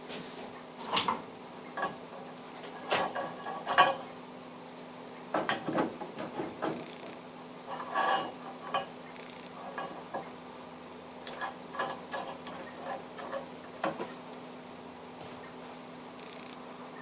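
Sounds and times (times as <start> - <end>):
low workshop hum: 0.0 - 17.0
light metallic clinks and taps: 1.8 - 4.1, 7.7 - 9.0, 11.2 - 14.1.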